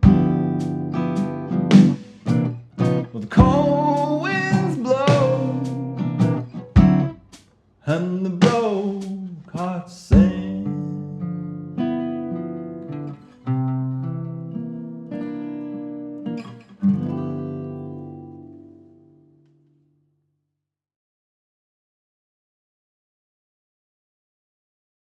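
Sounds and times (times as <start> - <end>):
acoustic guitar: 0.0 - 20.1
person singing: 3.1 - 6.0, 7.9 - 11.3.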